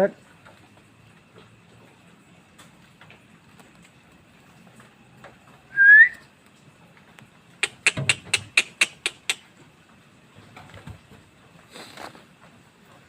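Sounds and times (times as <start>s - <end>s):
short rising whistle: 5.7s - 6.2s.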